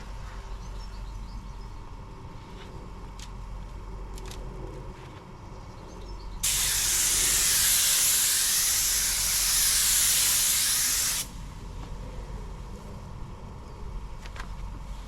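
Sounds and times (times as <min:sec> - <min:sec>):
paint spray gun hissing: 0:06.4 - 0:11.5.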